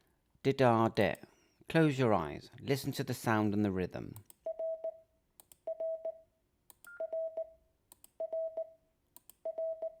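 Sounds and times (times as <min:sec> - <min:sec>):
morse code beeps: 0:05.7 - 0:06.2, 0:06.8 - 0:07.6, 0:08.2 - 0:08.8, 0:09.4 - 0:10.0.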